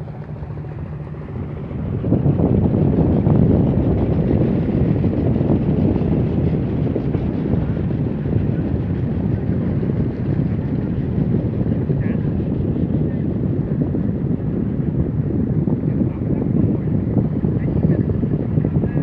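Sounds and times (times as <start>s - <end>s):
boat engine: 0.0s - 19.0s
wind buffeting microphone: 0.0s - 19.0s.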